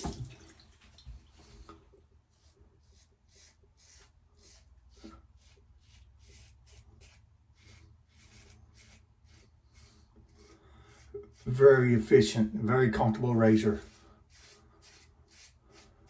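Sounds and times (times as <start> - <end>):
razor scraping stubble: 2.3 - 16.0.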